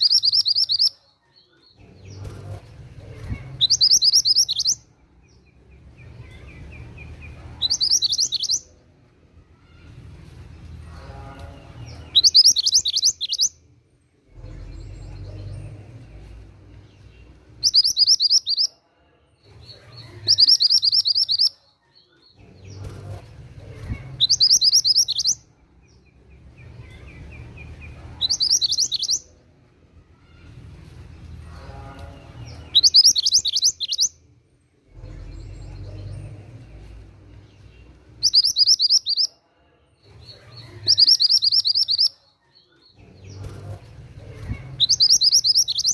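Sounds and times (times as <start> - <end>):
songbird singing high repeated notes: 0.0 - 2.2, 3.6 - 5.8, 6.7 - 8.7, 11.9 - 13.6, 16.8 - 18.8, 20.2 - 22.9, 24.2 - 26.2, 27.3 - 29.3, 32.5 - 34.2, 35.2 - 39.4, 40.6 - 43.5, 44.8 - 45.9.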